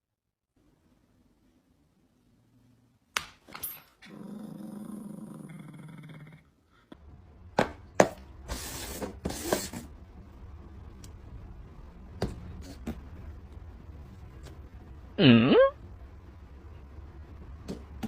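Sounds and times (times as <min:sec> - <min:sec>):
dog growling: 0:04.0 - 0:06.6.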